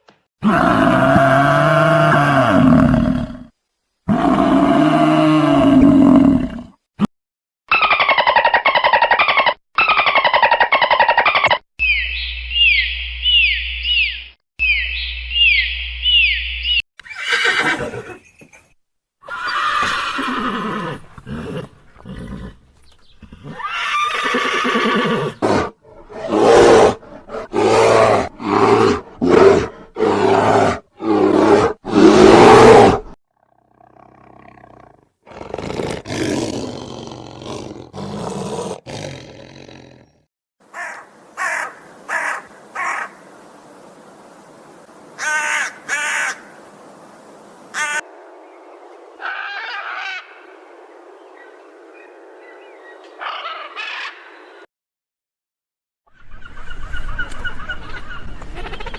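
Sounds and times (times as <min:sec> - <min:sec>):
wild animal calls: 0:23.2 - 0:40.2.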